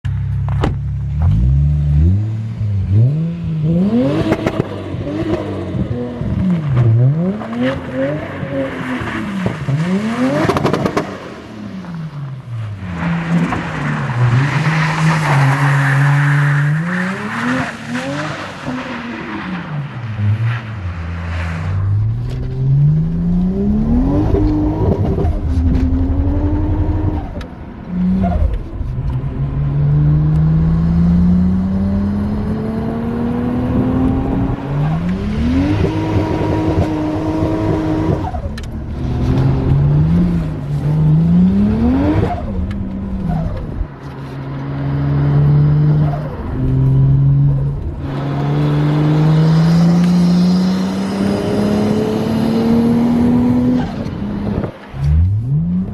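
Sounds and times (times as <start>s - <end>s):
car engine accelerating hard: 21.3s - 55.9s.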